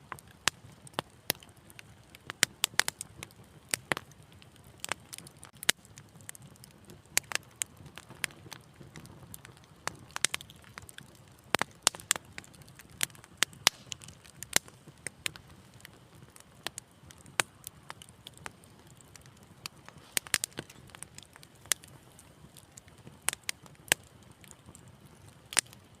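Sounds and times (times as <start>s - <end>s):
wood fire crackling: 0.0s - 26.0s.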